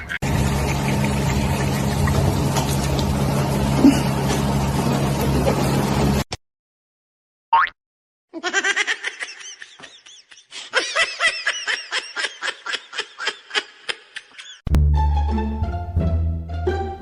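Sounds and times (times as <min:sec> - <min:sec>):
person laughing: 0:00.0 - 0:02.0, 0:03.8 - 0:04.4, 0:08.4 - 0:14.6.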